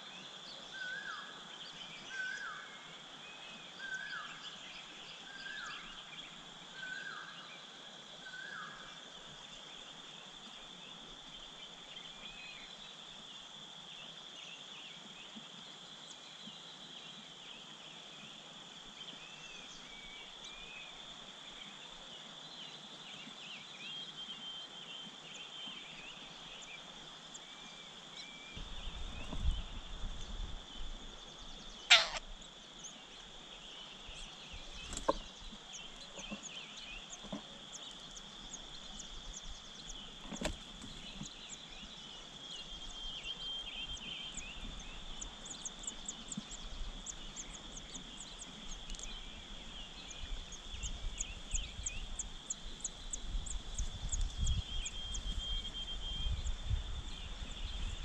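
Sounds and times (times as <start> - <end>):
low wind rumble: 28.6 - 32.5, 48.6 - 58.0
high bird chirps: 31.9 - 32.3.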